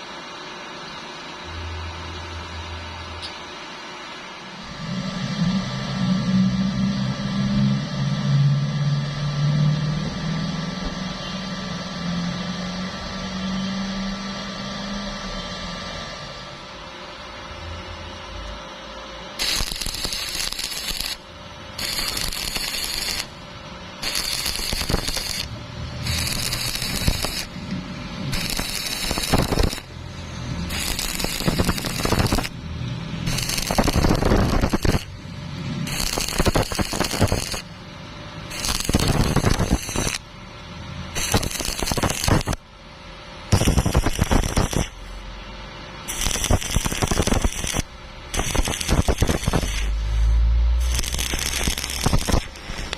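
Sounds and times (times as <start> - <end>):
welding arc crackling: 19.4 - 42.7, 43.4 - 45.3, 46.0 - 52.9.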